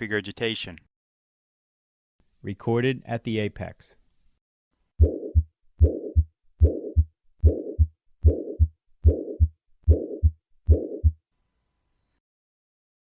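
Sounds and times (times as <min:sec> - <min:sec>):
heartbeat: 0:05.0 - 0:11.2
rushing heart murmur: 0:05.0 - 0:11.2.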